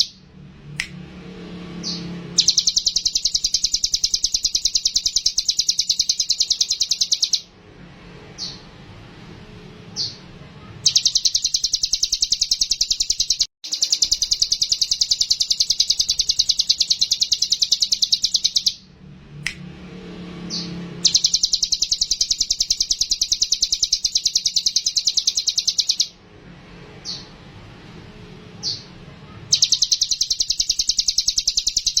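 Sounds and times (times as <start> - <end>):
bird singing rapid high trill: 0.0 - 0.3, 1.7 - 7.5, 8.3 - 8.7, 10.0 - 10.2, 10.8 - 18.9, 20.4 - 26.2, 27.0 - 27.4, 28.6 - 28.9, 29.5 - 32.0.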